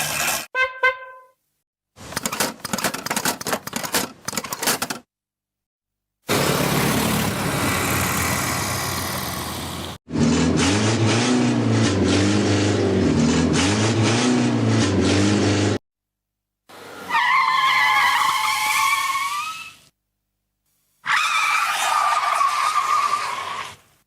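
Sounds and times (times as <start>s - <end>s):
small car engine running: 6.3s - 13.8s
high tyre screech: 16.7s - 19.9s, 21.0s - 23.8s.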